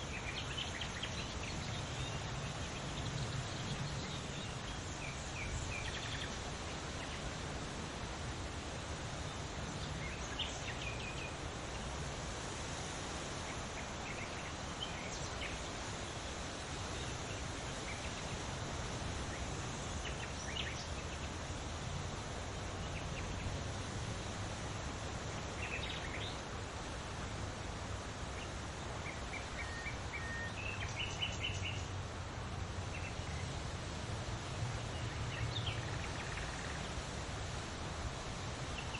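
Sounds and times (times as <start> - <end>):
small birds chirping: 0.0 - 7.4, 9.1 - 12.0, 24.8 - 26.8, 28.2 - 32.0, 32.8 - 33.7, 34.4 - 37.2, 38.3 - 38.9
leaves rustling in wind: 0.0 - 38.9.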